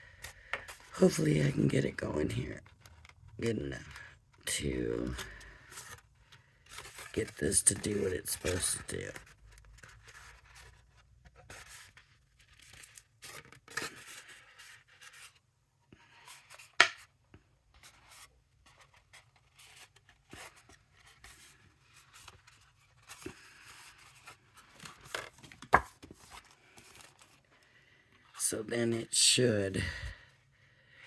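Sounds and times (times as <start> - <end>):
cardstock rustling and creasing: 0.2 - 28.4.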